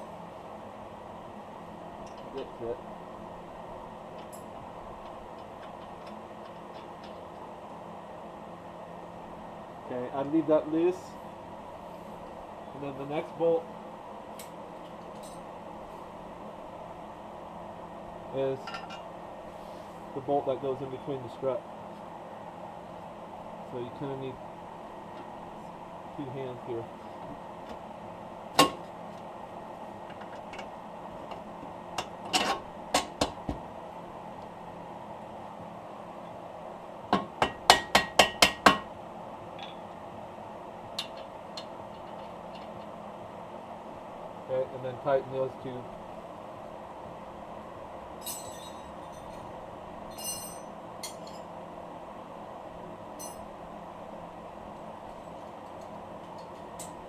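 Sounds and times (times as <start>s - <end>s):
steady background hiss: 0.0s - 57.0s
steady background hum: 0.0s - 57.0s
metal tools clinking: 48.2s - 49.5s, 50.1s - 51.5s.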